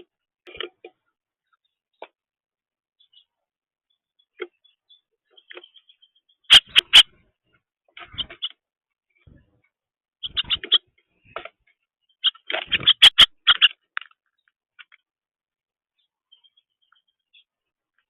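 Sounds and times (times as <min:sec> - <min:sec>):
bird chirping: 0:02.9 - 0:15.1, 0:15.8 - 0:18.0.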